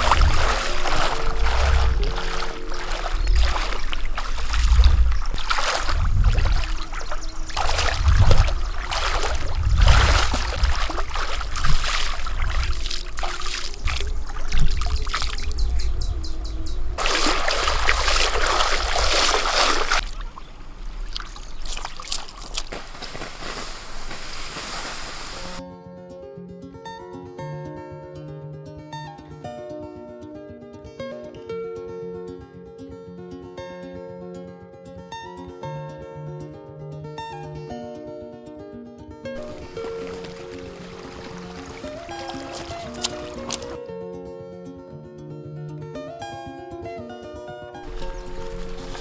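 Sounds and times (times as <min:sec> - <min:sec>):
low rumbling thumps: 0:00.0 - 0:23.3
water splashing and sloshing: 0:00.0 - 0:25.6, 0:39.4 - 0:43.8, 0:47.8 - 0:49.0
water trickling: 0:00.0 - 0:25.6, 0:39.4 - 0:43.8, 0:47.8 - 0:49.0.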